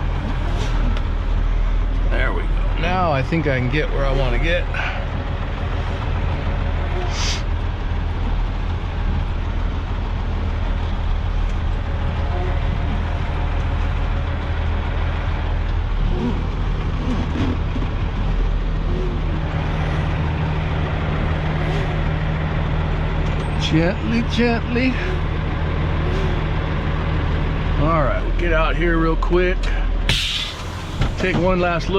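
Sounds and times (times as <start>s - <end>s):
diesel truck engine running: 0.0s - 31.9s
brief hiss: 30.1s - 31.2s.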